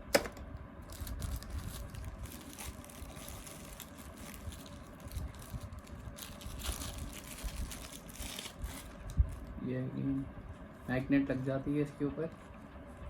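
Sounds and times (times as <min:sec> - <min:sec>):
low rumble: 0:00.4 - 0:10.6.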